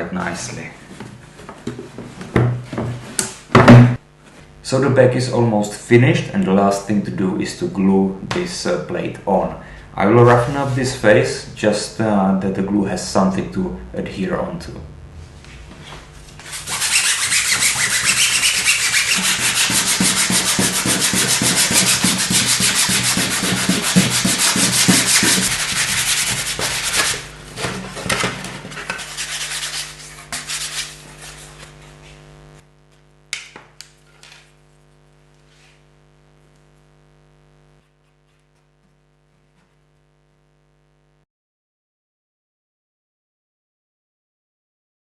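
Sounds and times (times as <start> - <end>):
sandpaper scuffing on a plate: 16.4 - 27.3, 28.7 - 32.3.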